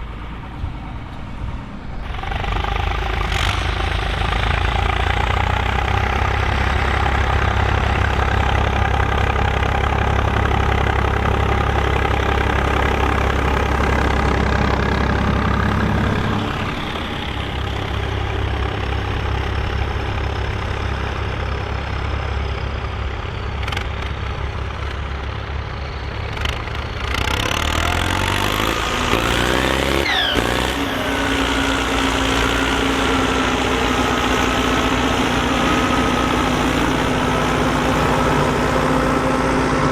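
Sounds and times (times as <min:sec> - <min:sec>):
tractor diesel engines running: 0:00.0 - 0:39.9
engine pitch sweeping up and down: 0:26.4 - 0:39.9.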